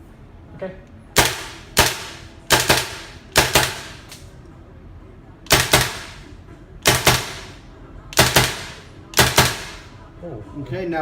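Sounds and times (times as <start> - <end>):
airsoft rifle shots: 1.2 - 4.2, 5.5 - 7.6, 8.2 - 9.9.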